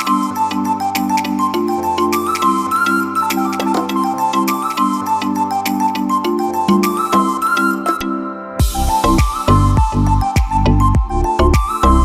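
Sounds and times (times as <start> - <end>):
background music with beat: 0.0 - 12.0.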